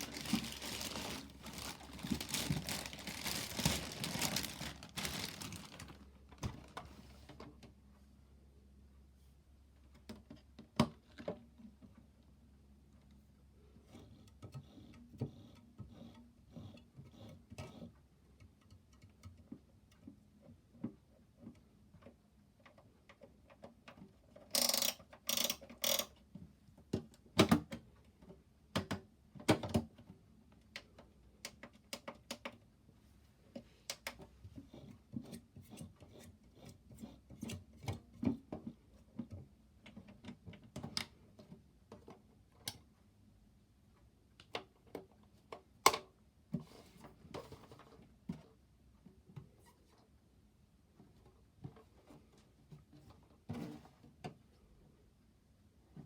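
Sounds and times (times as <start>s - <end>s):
plastic toy clicks and knocks: 24.4s - 26.2s.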